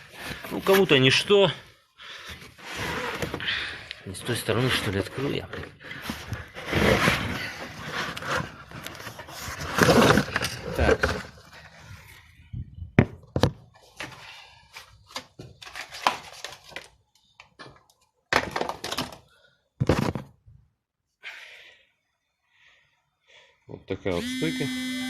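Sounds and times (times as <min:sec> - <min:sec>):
rustling and scraping: 0:02.2 - 0:12.4.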